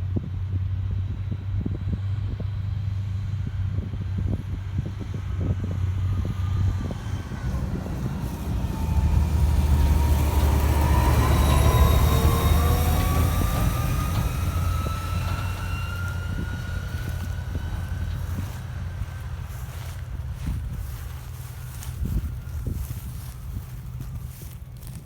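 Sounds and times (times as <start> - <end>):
diesel machinery drone: 0.0 - 25.0
rising whine: 5.3 - 25.0.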